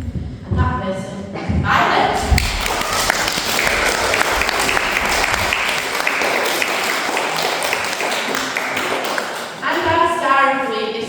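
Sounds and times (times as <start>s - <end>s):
children clapping: 1.9s - 10.1s.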